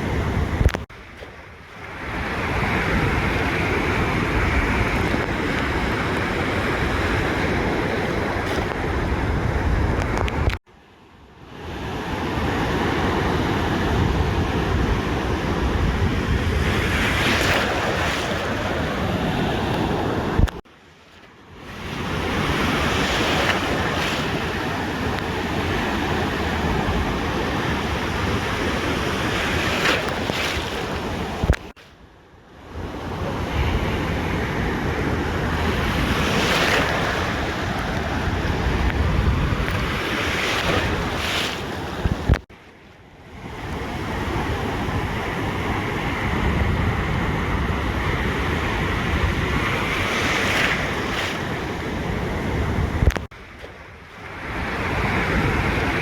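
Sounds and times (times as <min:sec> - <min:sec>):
ocean surf breaking: 0:00.0 - 0:10.6, 0:11.5 - 0:31.9, 0:32.7 - 0:56.0
wind buffeting microphone: 0:00.0 - 0:10.6, 0:32.8 - 0:42.4, 0:43.4 - 0:56.0.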